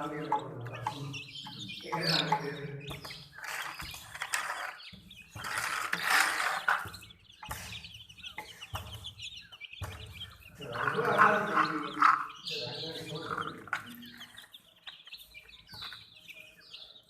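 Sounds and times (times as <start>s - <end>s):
chicks peeping: 0.0s - 17.0s
toy crane mechanical noise: 3.4s - 4.8s, 5.4s - 6.9s.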